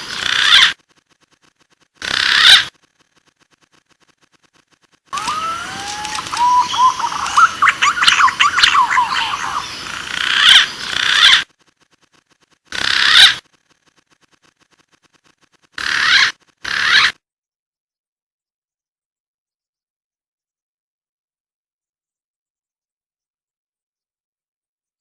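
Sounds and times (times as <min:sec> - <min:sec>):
pigeon whistling calls: 0:05.2 - 0:09.7.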